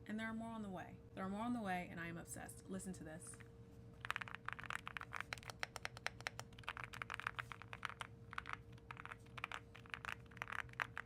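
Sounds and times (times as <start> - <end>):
mechanical keyboard typing: 4.0 - 11.0.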